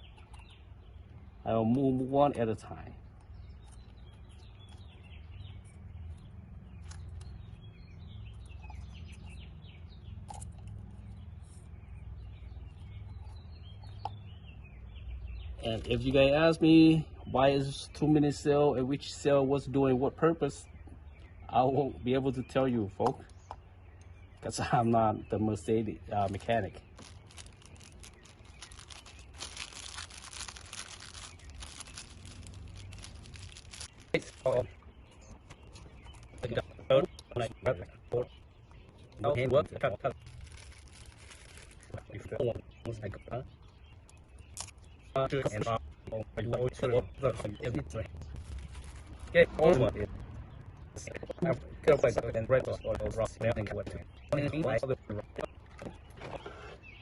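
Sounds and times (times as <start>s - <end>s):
birds chirping: 0.0s - 57.0s
crinkling and rustling: 26.2s - 37.2s, 40.0s - 42.7s, 47.4s - 49.4s
low rumble: 45.8s - 53.4s.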